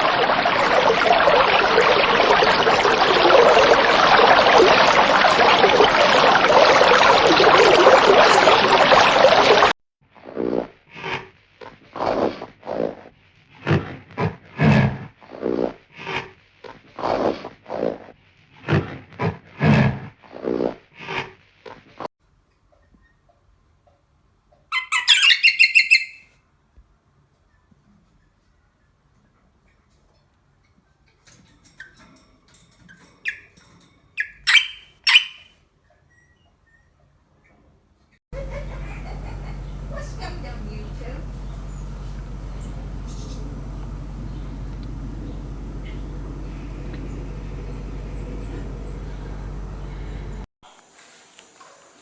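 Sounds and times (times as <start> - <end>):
animal grunting: 10.2 - 21.4
small animal squeaking: 24.7 - 26.2, 33.2 - 35.5
faint rustling: 50.6 - 52.0.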